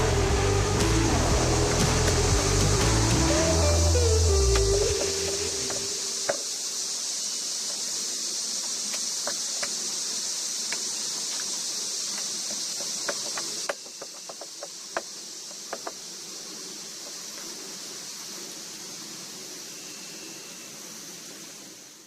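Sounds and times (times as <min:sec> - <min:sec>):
music track: 0:00.0 - 0:06.2
high-pitched hiss: 0:00.0 - 0:22.0
small ticks and clicks: 0:08.6 - 0:09.9, 0:10.6 - 0:16.0.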